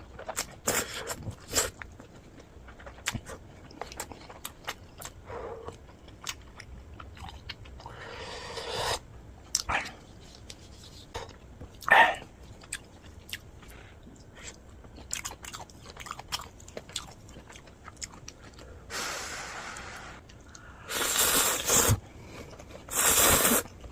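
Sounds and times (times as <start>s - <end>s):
wet chewing and mouth clicks: 0.0s - 8.0s, 11.3s - 18.7s
noodle slurping: 22.9s - 23.7s.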